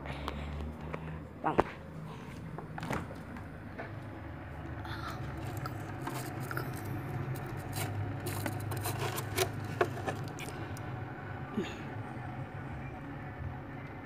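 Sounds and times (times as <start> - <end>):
steady low hum: 0.0 - 14.0
slime being mixed in container: 5.2 - 10.6.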